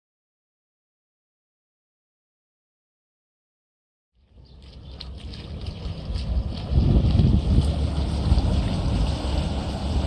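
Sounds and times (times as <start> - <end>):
water rushing along boat hull: 4.2 - 10.0
wind rumble on microphone: 4.4 - 10.0.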